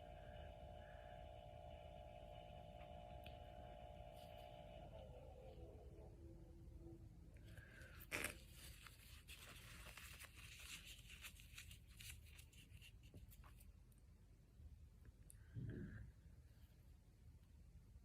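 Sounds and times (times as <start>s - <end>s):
soft crinkling and rustling: 7.4s - 13.9s.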